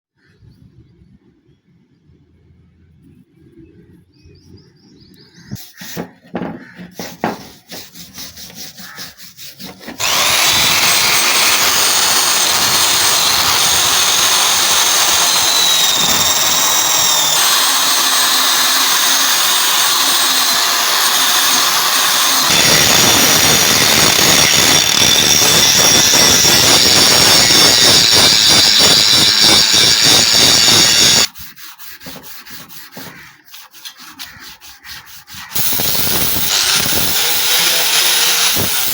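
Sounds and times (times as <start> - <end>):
power tool grinding metal: 7.0 - 34.4, 35.2 - 38.9.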